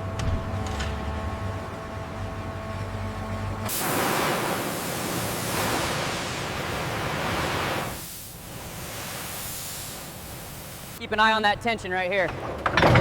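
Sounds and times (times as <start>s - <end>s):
loud rushing hiss: 3.7s - 11.0s.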